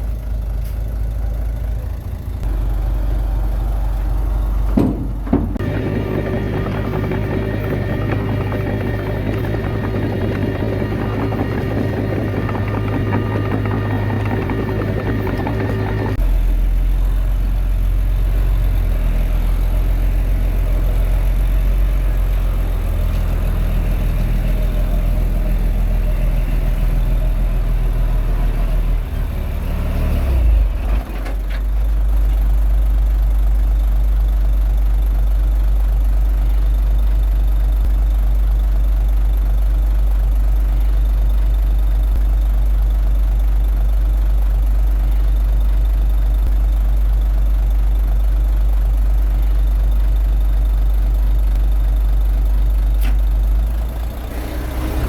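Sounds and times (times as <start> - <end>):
bulldozer diesel engine: 0.0 - 55.0.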